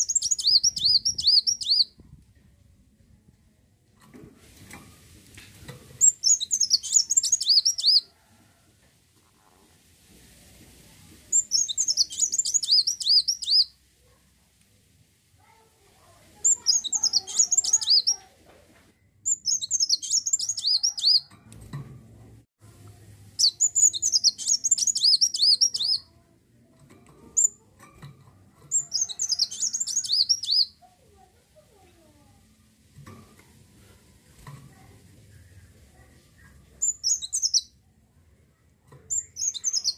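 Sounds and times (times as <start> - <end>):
sunbird singing chattering notes: 0.0 - 1.9, 6.0 - 8.1, 11.3 - 13.7, 16.4 - 18.2, 19.3 - 21.2, 23.4 - 26.0, 28.7 - 30.7, 36.8 - 37.7, 39.1 - 39.9.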